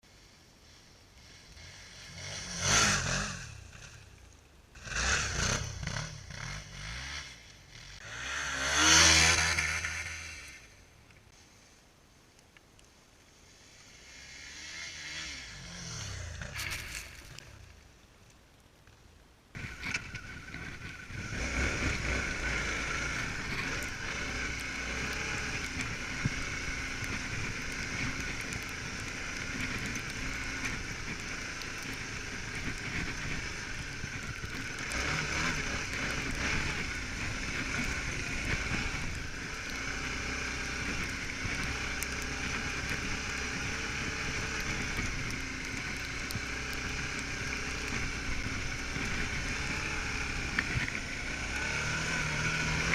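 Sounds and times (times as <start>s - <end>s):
wind: 0.0s - 52.9s
motorcycle engine running: 4.8s - 10.8s, 19.6s - 52.9s.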